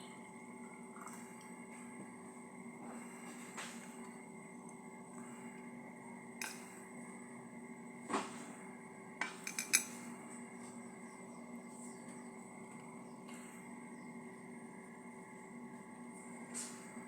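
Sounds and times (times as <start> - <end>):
steady hum: 0.0 - 17.0
tableware clinking: 9.2 - 10.0.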